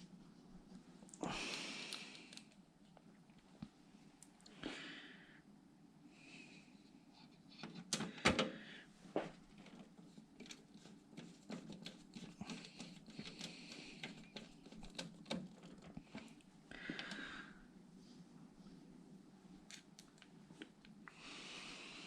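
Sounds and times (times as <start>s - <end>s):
computer parts clicking and knocking: 9.6s - 16.3s.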